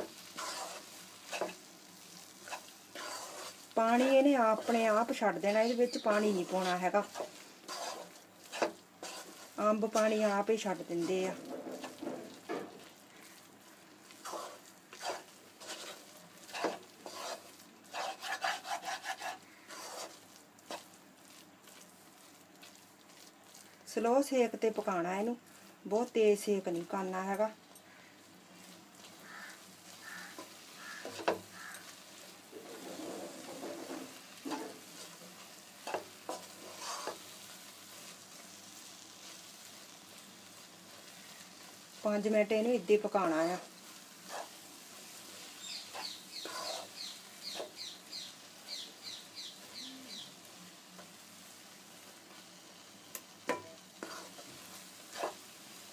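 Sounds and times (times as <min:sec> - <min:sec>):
spoon scraping a pan: 0:00.0 - 0:13.4, 0:14.0 - 0:21.0, 0:29.0 - 0:38.2, 0:42.9 - 0:51.2, 0:53.4 - 0:55.9
food sizzling in a pan: 0:00.0 - 0:55.9.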